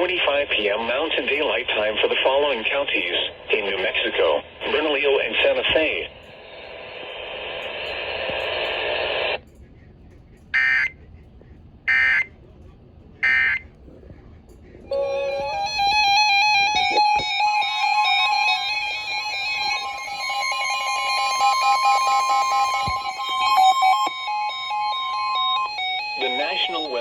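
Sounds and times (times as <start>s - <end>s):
digital data bursts: 11.9s - 12.3s, 13.2s - 13.6s
synthesized music: 14.9s - 27.0s.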